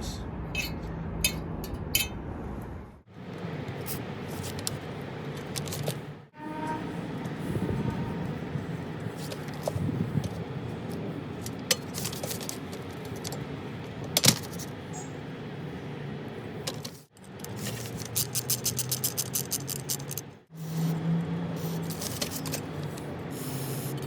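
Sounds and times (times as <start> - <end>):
metal fan parts clinking: 0.5 - 2.3, 3.3 - 6.2, 8.2 - 15.1, 16.6 - 24.0
fast run of clicks: 17.2 - 20.3.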